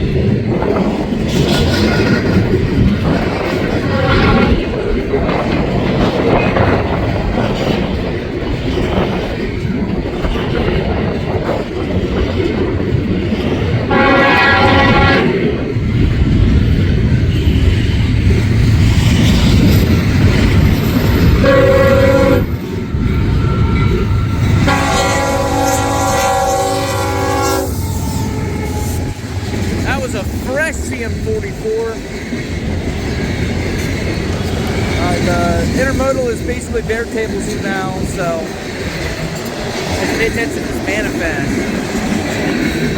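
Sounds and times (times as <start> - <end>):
freight train rumbling and clattering: 0.0 - 42.9
train horn blasts: 3.8 - 4.6, 13.9 - 15.4, 21.4 - 22.6, 24.6 - 29.7.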